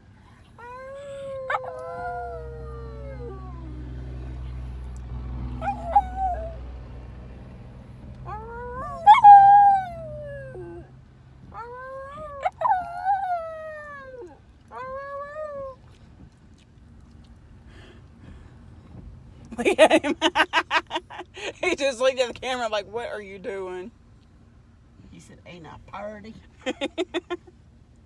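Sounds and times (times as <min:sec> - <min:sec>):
low steady rumble: 0:00.0 - 0:28.0
dog howling: 0:00.6 - 0:03.8, 0:05.6 - 0:06.6, 0:08.3 - 0:10.9
dog yelp: 0:05.6 - 0:06.6, 0:08.3 - 0:10.8, 0:11.6 - 0:14.0.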